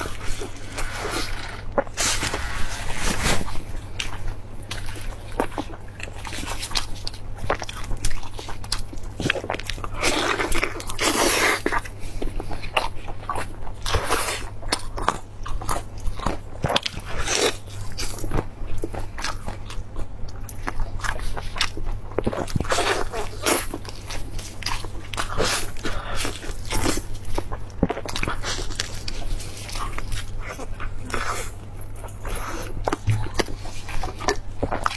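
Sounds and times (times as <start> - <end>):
chewing and crunching food: 0.0 - 34.9
low hum: 32.9 - 34.0.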